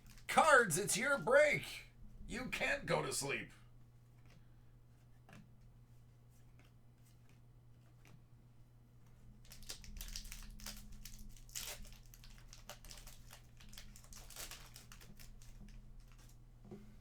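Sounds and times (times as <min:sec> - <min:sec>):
wrapper crinkling: 0:09.4 - 0:16.4.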